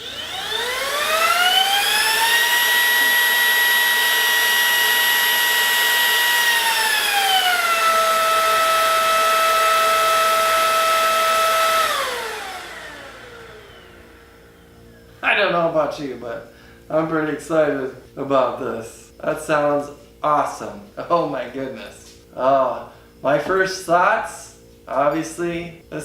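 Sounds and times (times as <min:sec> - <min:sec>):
vacuum motor whine: 0:00.0 - 0:15.2.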